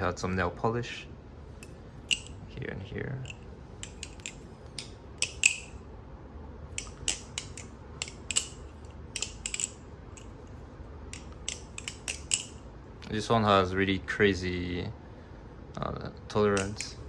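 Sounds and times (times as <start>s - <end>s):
balisong knife clacking: 1.6s - 2.4s, 3.2s - 5.8s, 6.8s - 10.4s, 11.1s - 12.6s, 16.5s - 17.0s.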